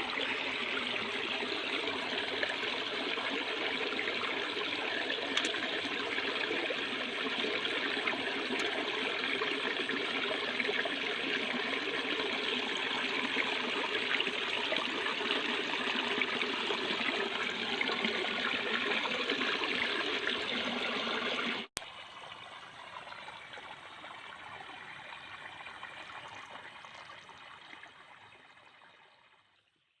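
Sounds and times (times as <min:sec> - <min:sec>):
running water rushing: 0:00.0 - 0:21.7
quieter water sound: 0:00.0 - 0:30.0.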